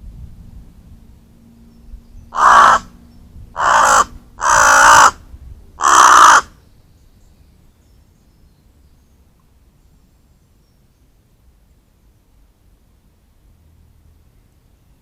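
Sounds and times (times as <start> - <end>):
crow cawing: 2.4 - 2.9, 3.6 - 5.2, 5.8 - 6.5.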